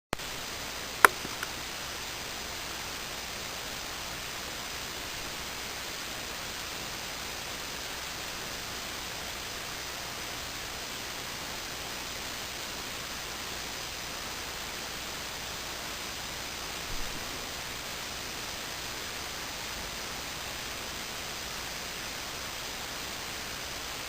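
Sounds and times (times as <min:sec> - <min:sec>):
steady background hiss: 0:00.2 - 0:24.0
sharp click: 0:01.0 - 0:01.5
faint ticks: 0:01.0 - 0:01.6.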